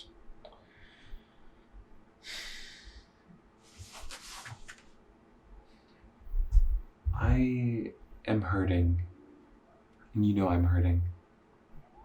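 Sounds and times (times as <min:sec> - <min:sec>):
man breathing: 0:00.6 - 0:03.3.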